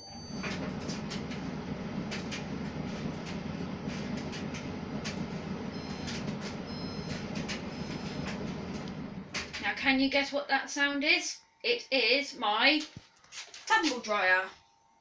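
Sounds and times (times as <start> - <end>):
tumble dryer drum rumbling: 0.0 - 10.3.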